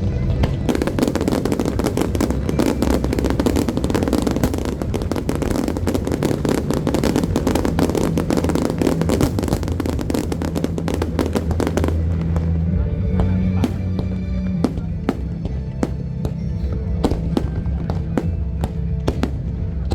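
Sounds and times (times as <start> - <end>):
fireworks crackling: 0.0 - 19.9
low rumble: 0.0 - 19.9.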